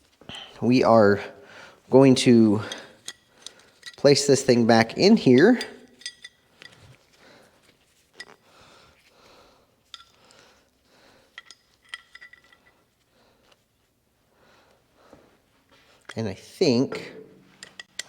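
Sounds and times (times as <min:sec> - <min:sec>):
metal parts clinking together: 0:02.6 - 0:04.3, 0:05.2 - 0:07.0, 0:09.9 - 0:10.2, 0:11.3 - 0:12.9, 0:17.5 - 0:18.0.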